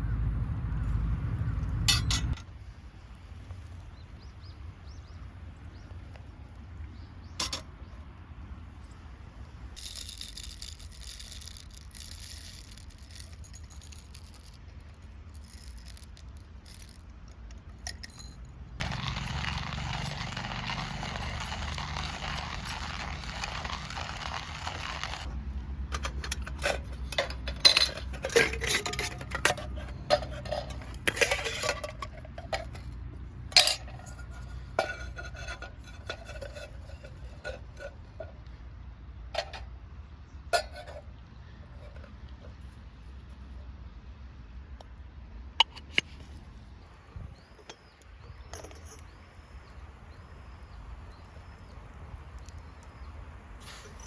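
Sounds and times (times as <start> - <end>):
tableware clinking and scraping: 25.9 - 32.9, 33.5 - 38.3, 40.6 - 41.0, 47.6 - 49.2.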